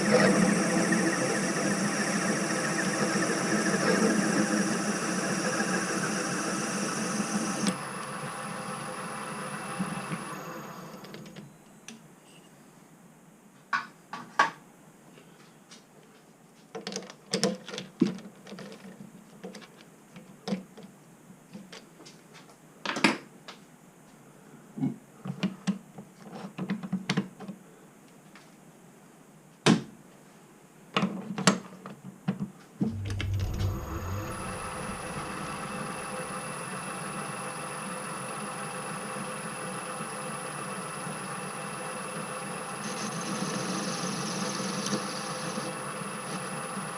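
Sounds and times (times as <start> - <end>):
lathe running hum: 0.0 - 11.4, 32.9 - 46.9.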